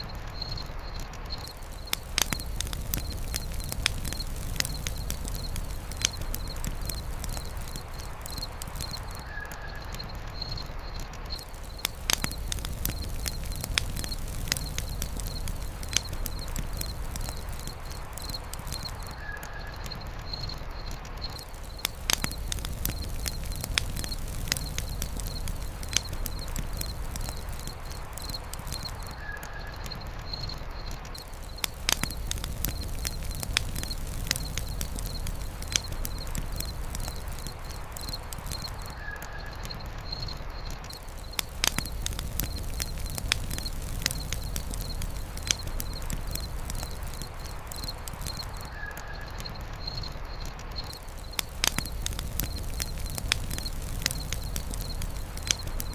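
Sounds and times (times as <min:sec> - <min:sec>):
insect chirping: 0:00.0 - 0:55.9
wood fire crackling and popping: 0:00.0 - 0:55.9.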